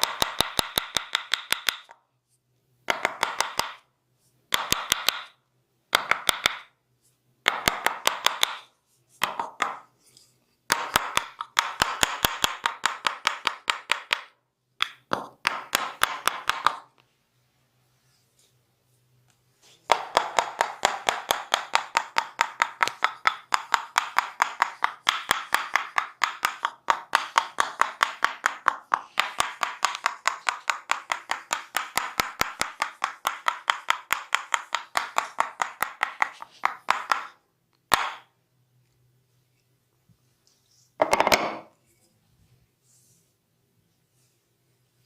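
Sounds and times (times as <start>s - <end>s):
hands clapping on body: 19.9s - 38.3s.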